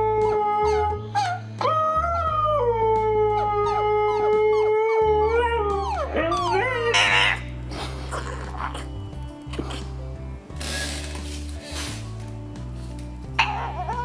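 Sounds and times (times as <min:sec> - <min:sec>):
dog cry rising and falling: 0:00.0 - 0:07.6, 0:13.4 - 0:14.0
dog howling: 0:00.0 - 0:08.9.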